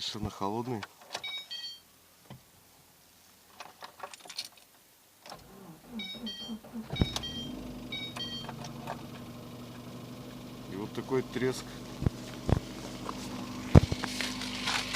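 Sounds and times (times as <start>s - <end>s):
car engine cranking and idling: 5.2s - 14.9s
keys clicking in ignition: 5.3s - 9.2s
short electronic beeps: 5.9s - 8.5s.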